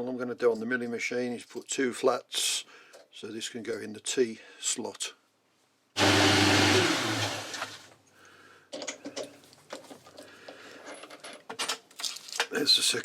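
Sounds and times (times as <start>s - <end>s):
machine tool motor running: 6.0s - 7.8s
motor winding down hum: 6.0s - 7.8s.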